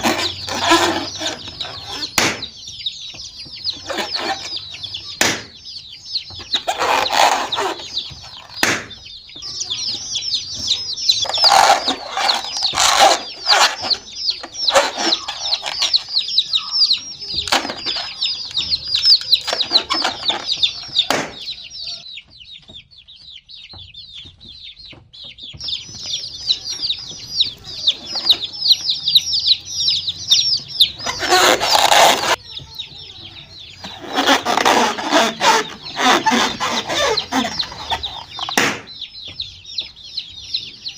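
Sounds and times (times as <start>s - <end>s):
baby chicks peeping: 0.0s - 40.9s
scuffling noise: 30.6s - 33.1s, 33.8s - 38.6s.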